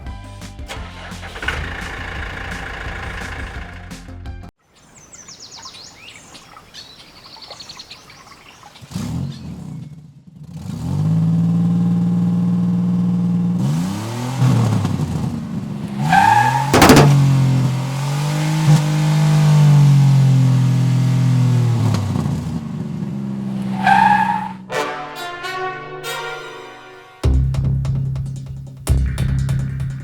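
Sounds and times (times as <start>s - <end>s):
vehicle engine revving: 0.8s - 4.2s, 8.8s - 24.7s.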